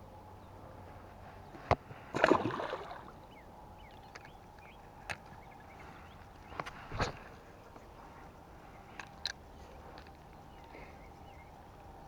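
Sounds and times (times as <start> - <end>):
pond water splash: 2.1 - 3.2.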